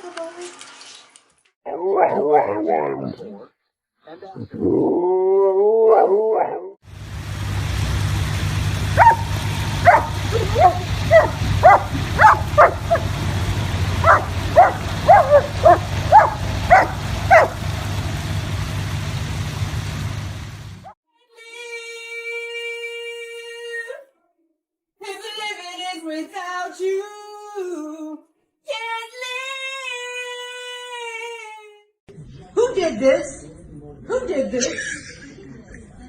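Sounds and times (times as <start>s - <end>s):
dog barking: 1.7s - 2.9s, 5.9s - 6.8s, 9.0s - 13.2s, 14.0s - 17.7s
low rumble: 7.0s - 20.9s.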